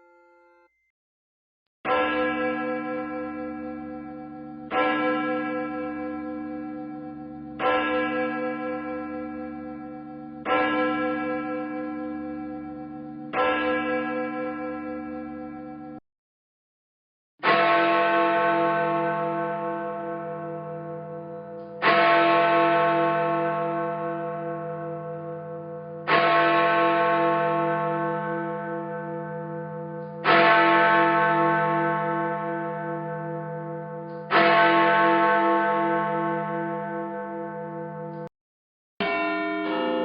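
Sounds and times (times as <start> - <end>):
large church bell tolling: 1.9 - 16.0, 17.4 - 38.3, 39.0 - 40.0.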